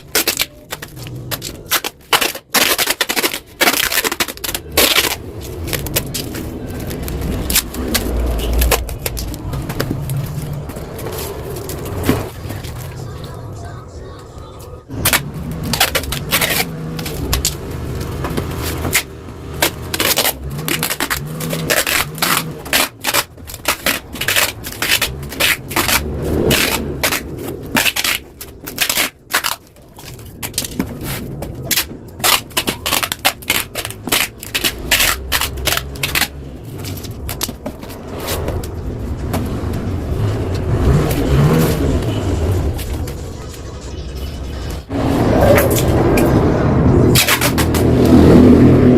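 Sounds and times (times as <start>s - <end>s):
two-stroke engine crackling: 14.9s - 43.4s.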